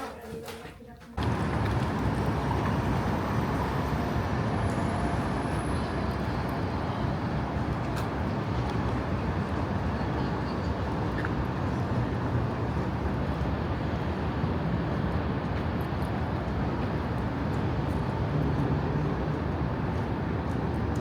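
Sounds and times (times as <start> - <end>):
city traffic rumble: 1.2 - 21.0.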